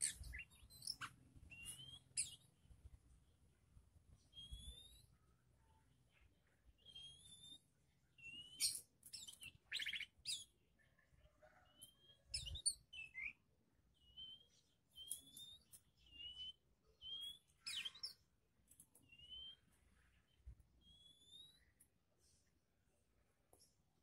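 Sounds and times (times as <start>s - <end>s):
songbird whistled notes: 0.0s - 2.5s, 4.3s - 5.1s, 8.2s - 10.5s, 12.0s - 13.4s, 14.0s - 18.2s, 19.1s - 19.6s, 20.8s - 21.7s.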